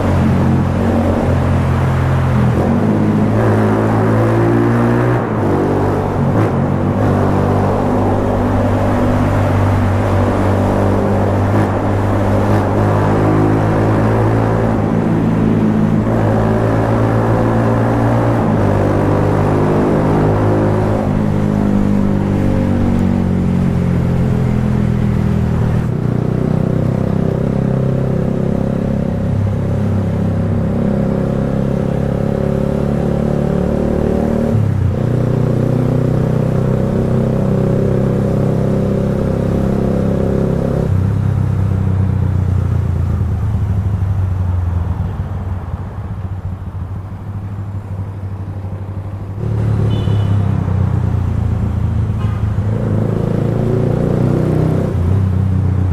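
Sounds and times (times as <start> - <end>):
motorcycle engine exhaust note: 47.7 - 51.2.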